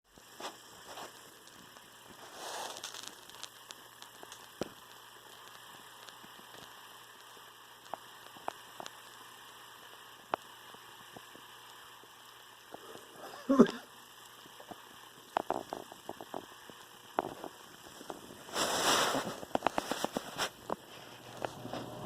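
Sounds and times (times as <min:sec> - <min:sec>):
faint steady hiss: 0:00.1 - 0:22.0
small clicks and taps: 0:02.8 - 0:06.8, 0:07.8 - 0:09.2, 0:14.2 - 0:18.3, 0:19.4 - 0:21.6.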